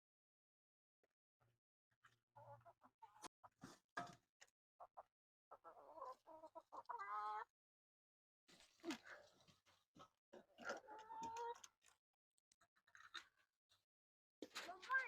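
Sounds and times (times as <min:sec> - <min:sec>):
hens clucking: 0:02.4 - 0:03.7, 0:04.8 - 0:07.5, 0:10.6 - 0:11.7.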